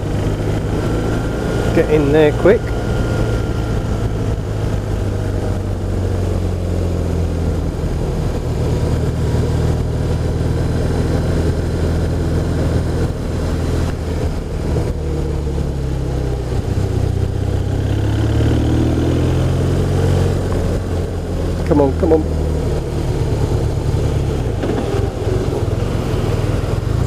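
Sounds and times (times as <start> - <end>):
motorcycle engine running: 0.0 - 27.0
wind and road noise: 0.0 - 27.0.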